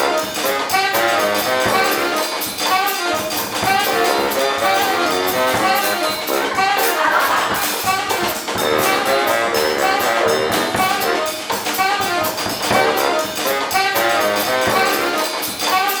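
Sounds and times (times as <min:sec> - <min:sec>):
brass horns playing melody: 0:00.0 - 0:16.0
steady drum beat: 0:00.0 - 0:16.0.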